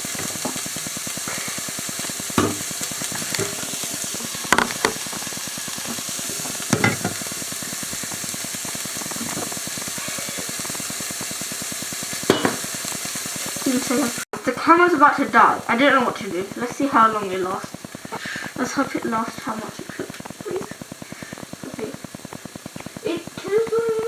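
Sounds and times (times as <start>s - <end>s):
food sizzling in hot oil: 0.0s - 24.0s
stirring knocks and scrapes on pan: 2.2s - 5.3s, 5.9s - 7.5s, 12.2s - 12.8s.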